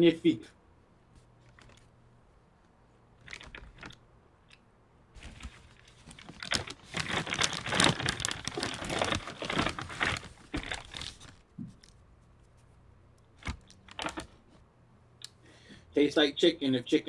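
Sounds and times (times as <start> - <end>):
wrapping crumpled by hand: 3.2 - 4.0, 5.2 - 12.0, 13.4 - 14.5.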